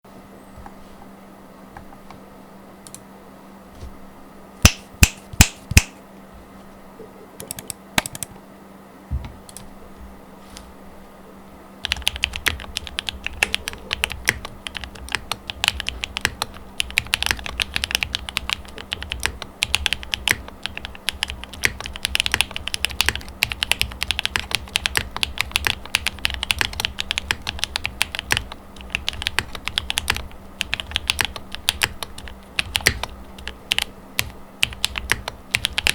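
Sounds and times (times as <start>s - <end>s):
mechanical keyboard typing: 7.4s - 8.3s, 11.8s - 35.9s.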